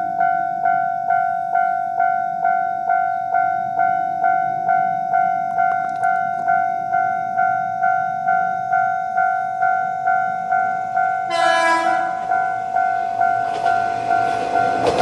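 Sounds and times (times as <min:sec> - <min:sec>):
level crossing warning bell: 0:00.0 - 0:15.0
sharp clicks: 0:05.6 - 0:06.5.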